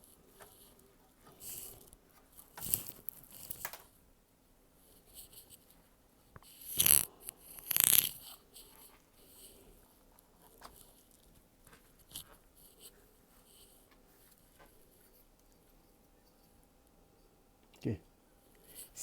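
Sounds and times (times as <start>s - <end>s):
small parts clicking and tapping: 1.4s - 4.0s, 6.4s - 8.9s.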